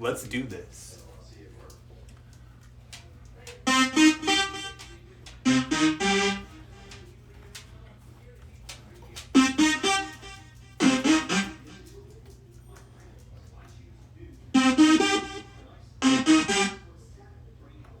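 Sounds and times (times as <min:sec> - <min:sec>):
keytar synth tone phrases: 0:03.7 - 0:07.0, 0:09.4 - 0:11.8, 0:14.6 - 0:16.8.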